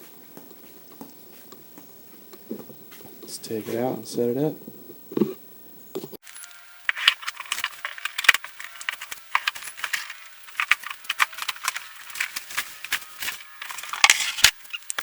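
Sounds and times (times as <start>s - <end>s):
packaging crinkling and rustling: 6.2s - 15.0s.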